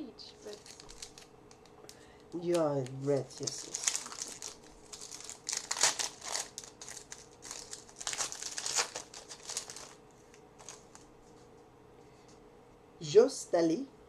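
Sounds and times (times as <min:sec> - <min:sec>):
foil wrapper crinkling: 0:00.5 - 0:11.1.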